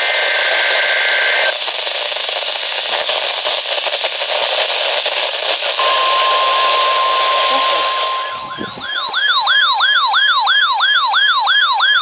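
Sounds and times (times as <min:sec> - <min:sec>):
radio static and hiss: 0:00.0 - 0:09.2
two-tone data screech: 0:05.8 - 0:12.0.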